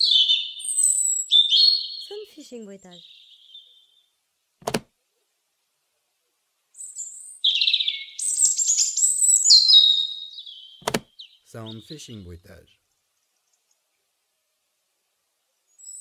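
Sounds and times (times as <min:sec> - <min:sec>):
robin singing: 0:00.0 - 0:04.2, 0:06.7 - 0:14.0, 0:15.7 - 0:16.0
sharp click: 0:04.6 - 0:04.9, 0:10.8 - 0:11.1.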